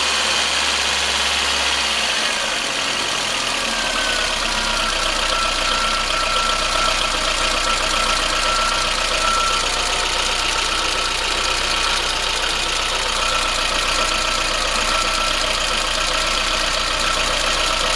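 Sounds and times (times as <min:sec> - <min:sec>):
car engine idling: 0:00.0 - 0:17.9
fast ticking engine knock: 0:04.3 - 0:17.9.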